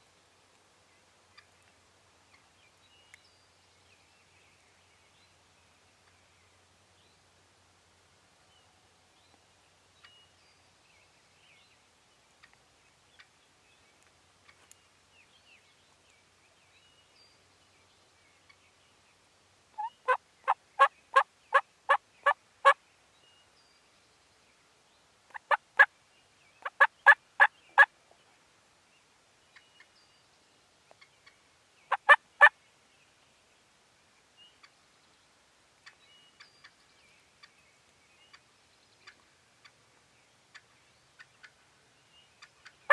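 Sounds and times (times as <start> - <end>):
wild turkey yelping: 19.8 - 22.8, 25.3 - 25.9, 26.6 - 27.9, 31.9 - 32.5.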